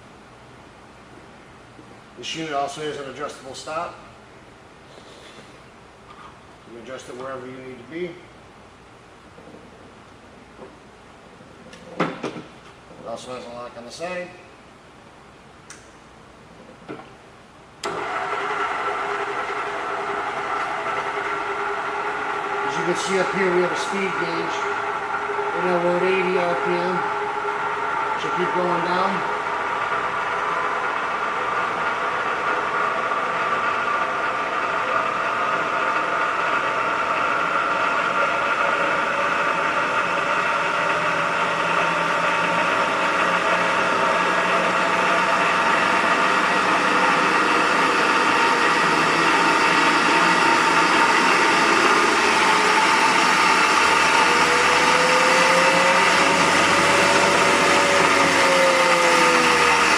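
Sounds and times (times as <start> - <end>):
drill press motor hum: 17.8 - 59.9.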